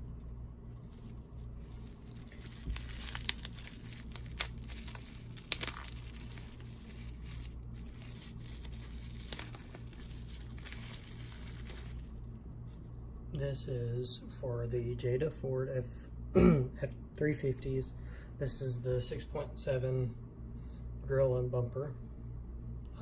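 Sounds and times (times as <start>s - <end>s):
steady low hum: 0.0s - 23.0s
packaging crinkling and tearing: 0.8s - 12.8s.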